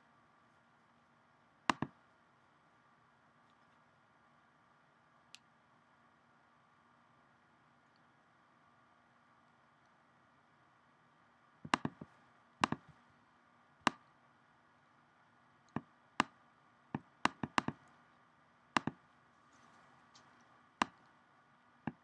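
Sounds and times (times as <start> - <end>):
faint room hiss: 0.0 - 22.0
sharp short clicks and taps: 1.7 - 2.0, 11.7 - 13.0, 13.8 - 14.1, 15.7 - 16.4, 17.0 - 18.0, 18.8 - 19.0, 20.2 - 21.1.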